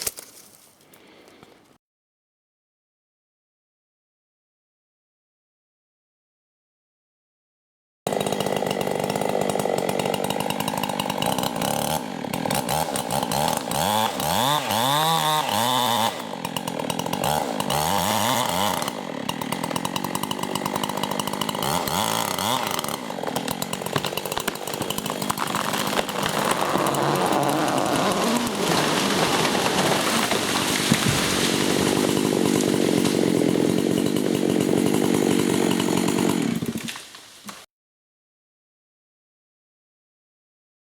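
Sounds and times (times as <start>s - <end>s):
chainsaw running: 8.1s - 37.6s.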